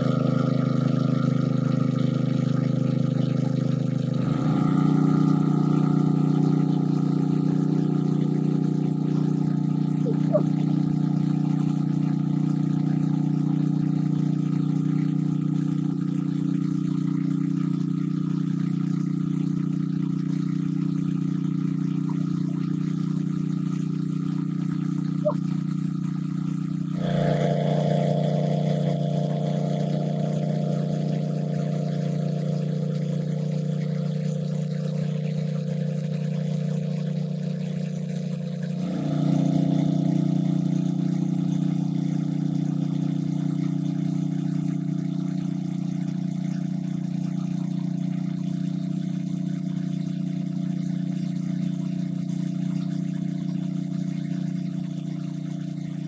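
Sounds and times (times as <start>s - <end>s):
engine running steadily: 0.0s - 56.0s.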